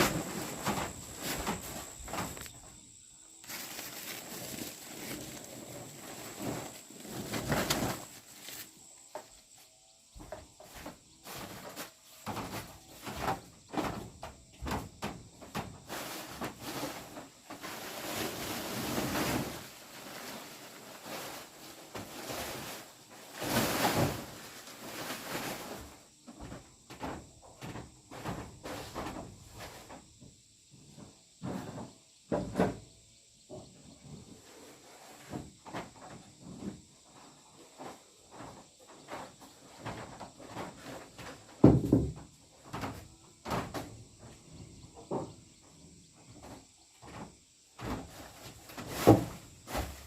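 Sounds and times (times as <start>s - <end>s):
objects knocking and scraping: 0.0s - 2.8s, 3.4s - 9.4s, 33.5s - 45.6s.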